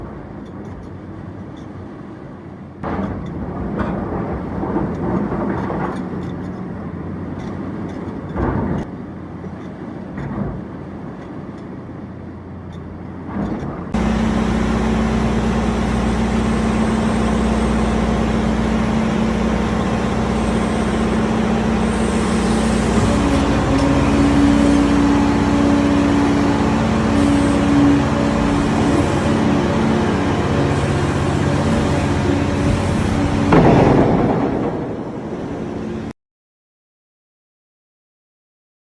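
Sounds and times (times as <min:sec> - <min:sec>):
knocks and clatters: 0:02.8 - 0:06.8, 0:15.6 - 0:35.7
heavy machinery engine: 0:02.8 - 0:36.1.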